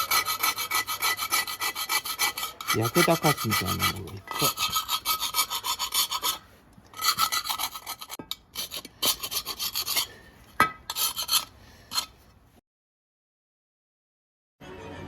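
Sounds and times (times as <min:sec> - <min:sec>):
scraping on metal part: 0:00.0 - 0:12.2.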